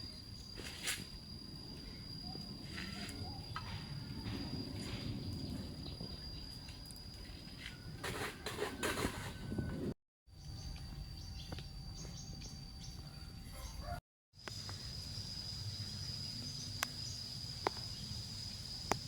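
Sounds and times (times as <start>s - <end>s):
high-pitched insect trill: 0.0s - 9.6s, 10.3s - 19.0s
bird chirps: 10.4s - 14.0s.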